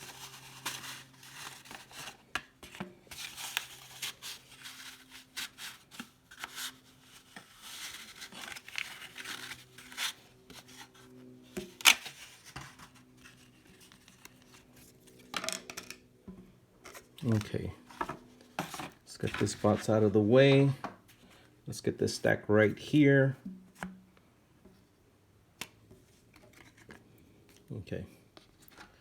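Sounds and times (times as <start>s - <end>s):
cards scraping and rustling: 0.0s - 16.1s, 16.8s - 21.4s, 26.0s - 27.6s.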